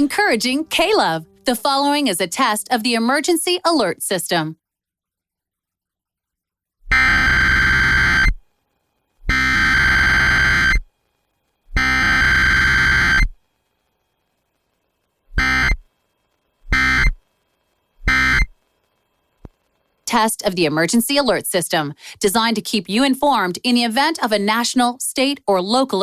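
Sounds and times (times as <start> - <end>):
buzzy digital data bursts: 6.9 - 8.5, 9.2 - 11.0, 11.6 - 13.7, 15.3 - 19.3.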